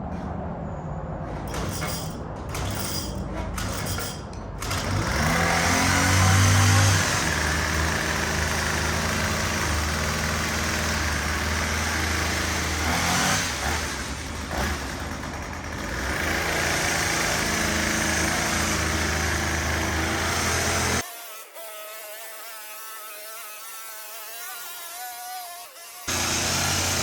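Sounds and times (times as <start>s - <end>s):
lawn mower engine running: 1.5s - 21.0s, 26.1s - 27.0s.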